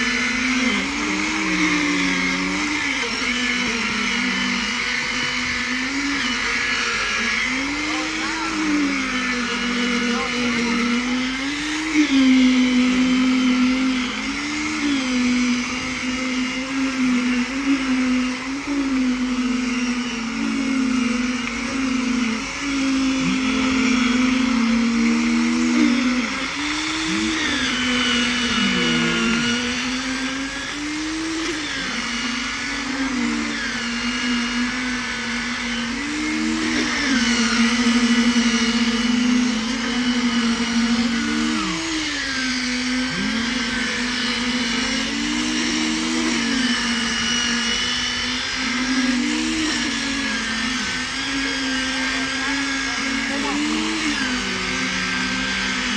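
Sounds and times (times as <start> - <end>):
machinery motor humming: 0.0 - 55.9.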